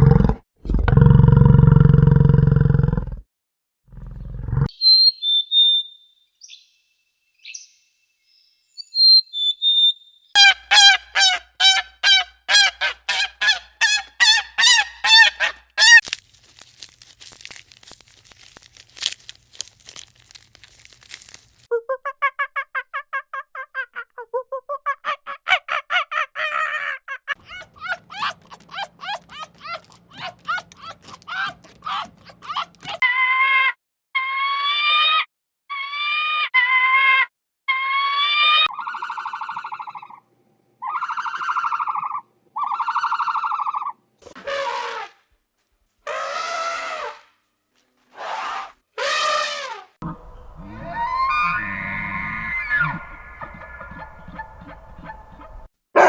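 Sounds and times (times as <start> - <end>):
geese honking: 10.4 - 16.0, 50.0 - 56.0
thin high calls: 10.4 - 21.7, 50.0 - 55.7.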